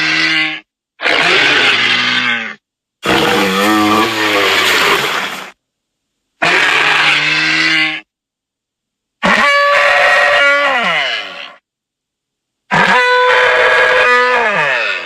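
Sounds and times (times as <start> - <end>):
deep bellowing creature calls: 0.0 - 5.4, 12.7 - 15.0.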